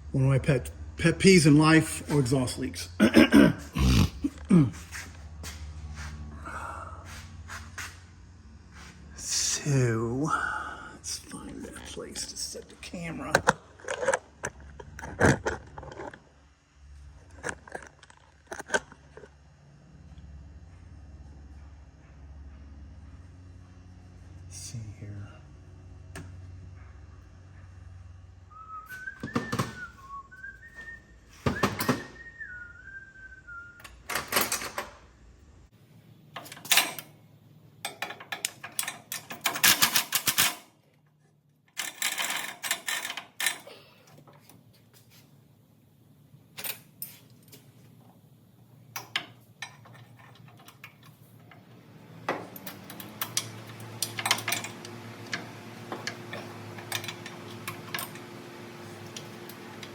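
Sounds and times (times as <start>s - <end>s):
person whistling a tune: 28.5s - 33.9s
tools being handled: 37.8s - 40.7s, 46.6s - 47.9s, 49.0s - 51.6s.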